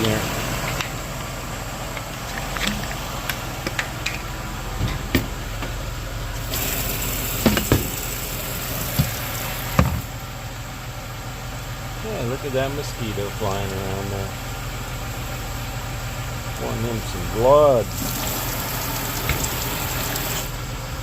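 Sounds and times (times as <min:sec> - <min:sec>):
van engine idling: 0:00.0 - 0:21.0
water running into a bottle: 0:06.4 - 0:09.8, 0:17.9 - 0:20.5.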